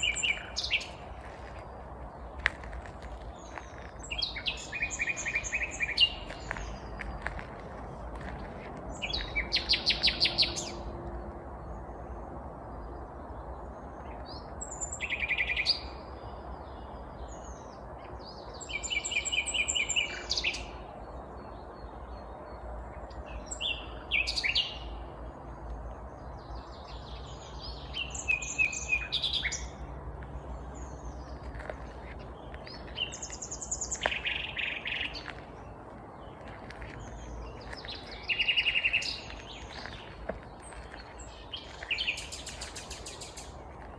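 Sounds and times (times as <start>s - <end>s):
nightingale singing: 0.0s - 1.1s, 26.8s - 29.8s.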